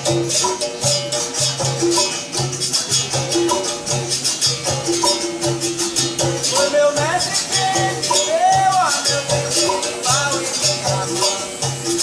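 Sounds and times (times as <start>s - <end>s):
berimbau: 0.0s - 12.0s
low beat: 0.0s - 12.0s
rattling shaker: 0.0s - 12.0s.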